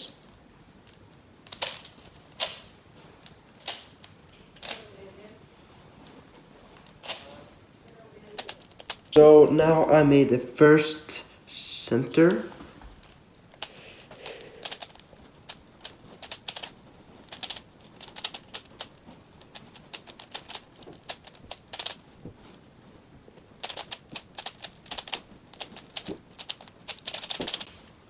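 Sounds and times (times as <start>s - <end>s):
puzzle cube clicking as turned: 0.9s - 4.9s, 6.8s - 7.3s, 8.3s - 9.1s, 13.0s - 22.1s, 23.6s - 27.7s.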